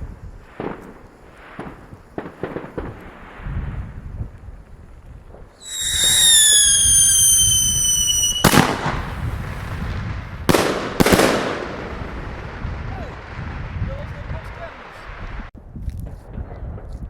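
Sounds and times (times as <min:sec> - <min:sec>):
firework bangs: 0:00.0 - 0:15.5
firework whistle falling in pitch: 0:05.6 - 0:09.0.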